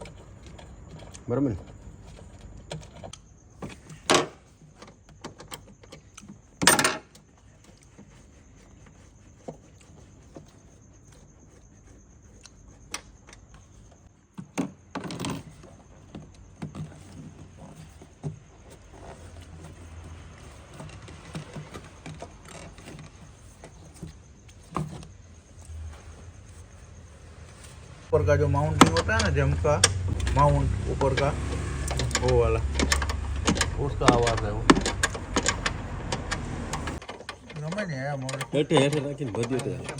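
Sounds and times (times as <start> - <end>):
car suspension knocks and clunks: 28.5 - 37.0.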